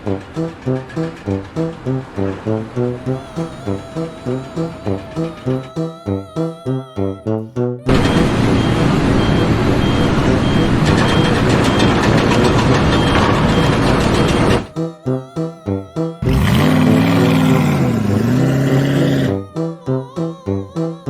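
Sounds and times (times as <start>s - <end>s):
heavy vehicle engine running: 0.0s - 5.7s, 7.9s - 14.7s, 16.2s - 19.3s
music: 0.0s - 21.0s
reversing alarm beeping: 7.9s - 14.8s.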